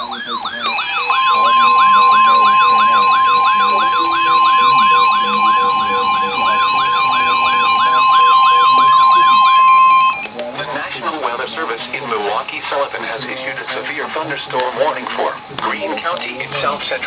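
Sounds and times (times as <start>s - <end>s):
falling whoop alarm: 0.0s - 10.4s
steady warning alarm tone: 0.0s - 17.0s.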